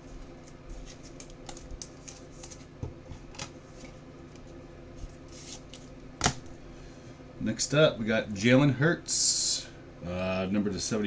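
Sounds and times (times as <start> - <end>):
trading cards rustling and clicking: 0.5 - 4.0.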